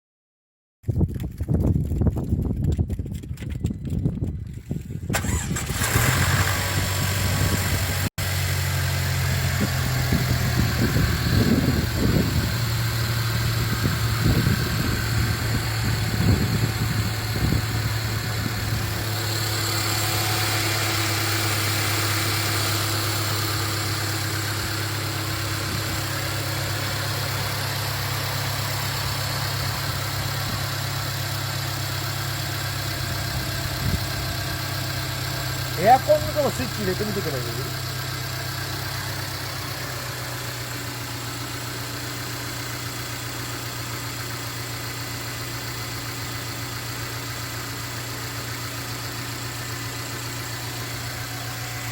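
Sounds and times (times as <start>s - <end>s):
engine idling with knocks: 0.9s - 5.8s
car engine starting: 1.8s - 51.9s.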